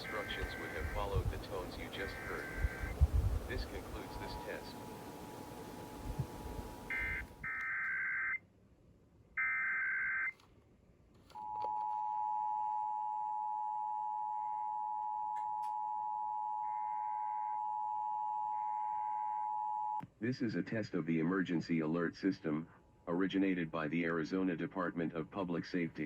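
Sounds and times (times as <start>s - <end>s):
warbling digital data bursts: 0.0s - 4.7s
steady attention tone: 0.0s - 7.5s.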